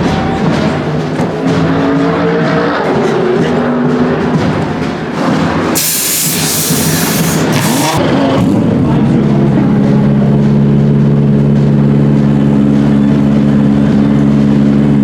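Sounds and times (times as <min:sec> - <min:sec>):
loud rushing noise: 0:00.0 - 0:08.9
race car: 0:00.0 - 0:15.0.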